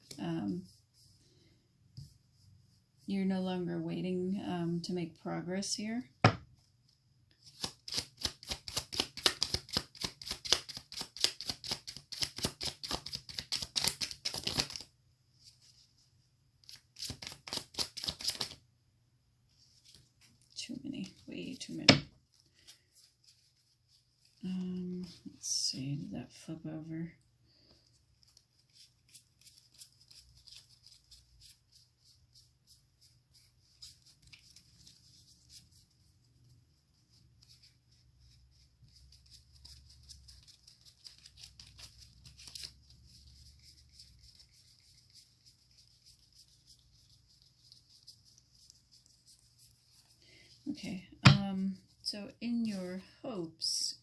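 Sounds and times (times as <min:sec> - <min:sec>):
cards shuffled by hand: 0:07.4 - 0:14.9, 0:16.6 - 0:18.6, 0:28.2 - 0:35.9, 0:38.9 - 0:50.2
low room hum: 0:18.3 - 0:54.0.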